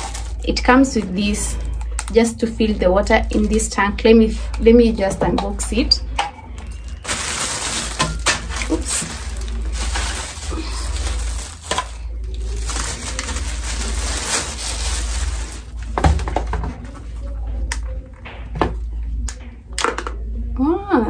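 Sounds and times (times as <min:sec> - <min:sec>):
packaging rustling: 0:00.0 - 0:02.2, 0:05.7 - 0:17.0.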